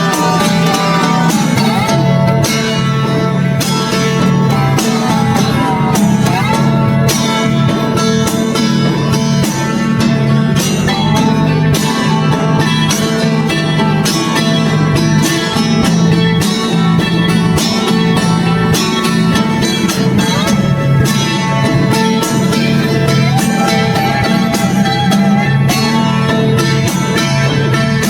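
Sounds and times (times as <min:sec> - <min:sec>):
bluegrass music with guitar and banjo: 0:00.0 - 0:28.0.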